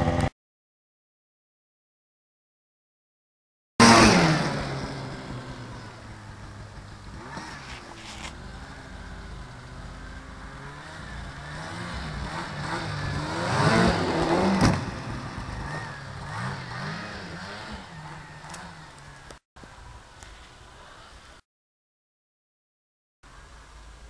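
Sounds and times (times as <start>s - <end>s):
snowmobile engine revving: 3.8s - 19.4s.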